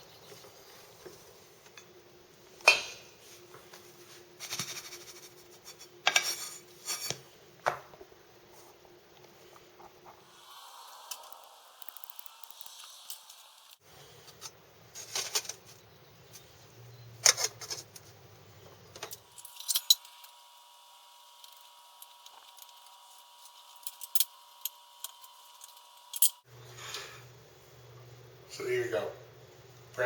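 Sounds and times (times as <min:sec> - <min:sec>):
metal cookware clinking and clattering: 0:02.6 - 0:03.1.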